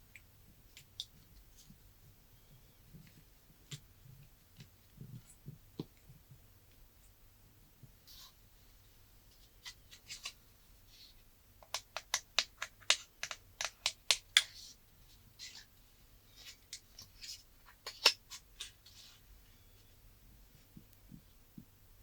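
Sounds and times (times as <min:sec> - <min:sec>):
hands clicking and tapping phone: 0:11.6 - 0:14.6.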